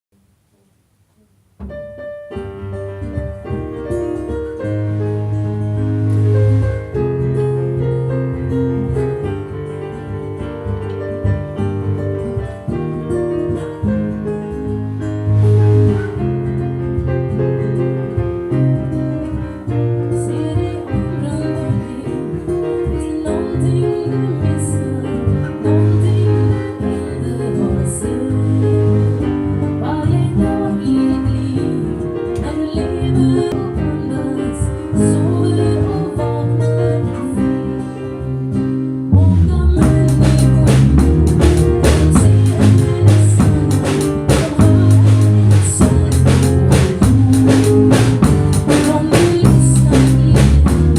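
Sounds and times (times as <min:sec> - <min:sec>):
drum kit: 0:01.5 - 0:37.9, 0:39.1 - 0:50.9
guitar song: 0:01.6 - 0:50.9
person singing: 0:39.1 - 0:50.9.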